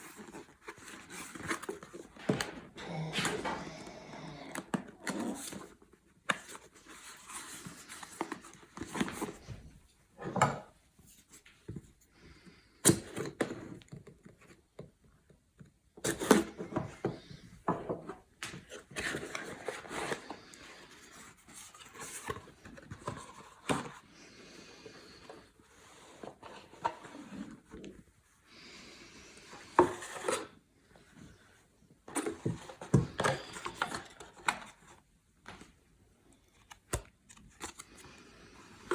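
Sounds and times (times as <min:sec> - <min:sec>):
packaging rustling and scraping: 0:00.0 - 0:10.4, 0:29.4 - 0:30.6.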